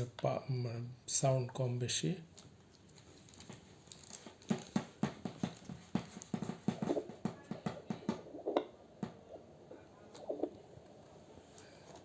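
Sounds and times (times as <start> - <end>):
dull thumps from loudspeaker: 4.5 - 9.2.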